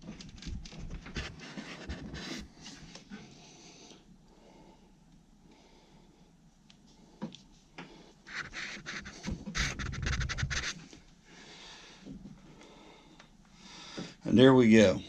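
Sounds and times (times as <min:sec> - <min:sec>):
hose scratching and rubbing: 0:08.3 - 0:10.9.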